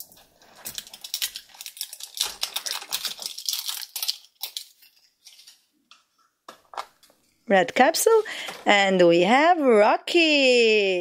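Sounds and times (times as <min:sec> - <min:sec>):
plastic wrapper tearing: 0:00.0 - 0:05.7.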